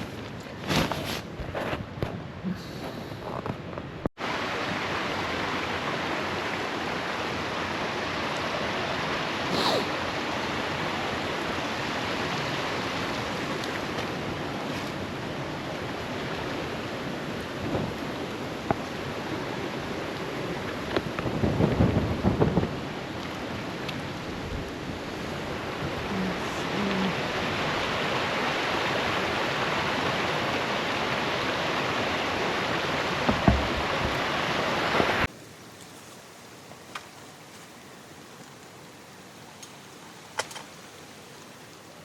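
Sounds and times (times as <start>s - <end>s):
low thumps: 33.3s - 35.3s.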